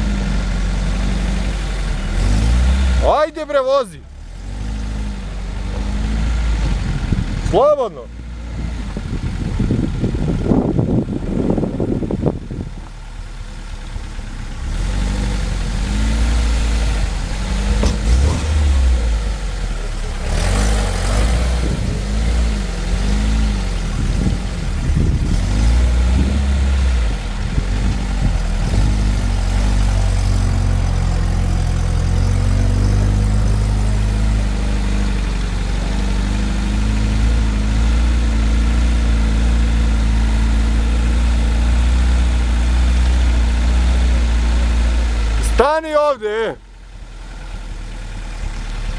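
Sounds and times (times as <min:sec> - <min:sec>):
off-road vehicle engine revving: 0:00.0 - 0:48.9.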